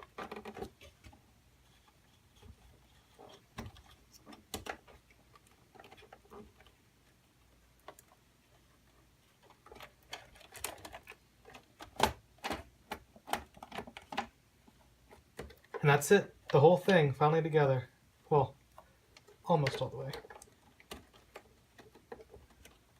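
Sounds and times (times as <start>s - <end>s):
clicks and knocks inside computer case: 10.2s - 14.4s.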